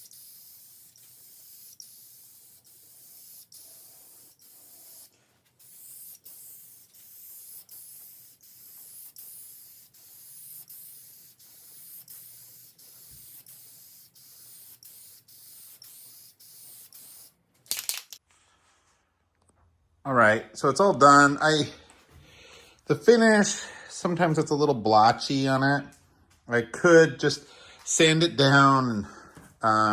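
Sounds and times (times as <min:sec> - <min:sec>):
aerosol can spraying: 0:00.0 - 0:18.2.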